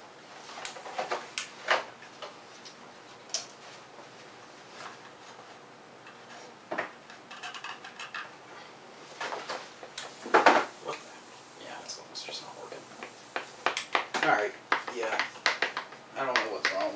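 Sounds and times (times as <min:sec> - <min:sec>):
spark gap snapping and crackling: 0:10.0 - 0:10.8.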